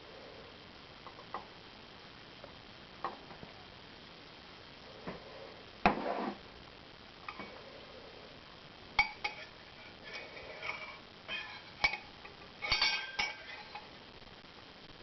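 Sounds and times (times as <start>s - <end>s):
spoon clinking against glass: 11.3s - 13.8s.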